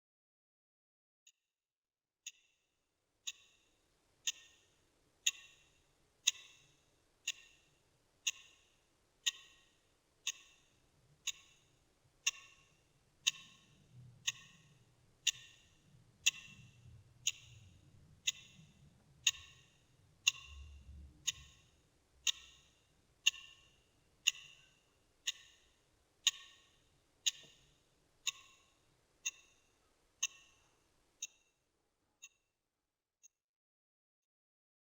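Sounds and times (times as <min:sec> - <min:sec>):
clock ticking: 0:03.2 - 0:03.6, 0:04.2 - 0:31.5.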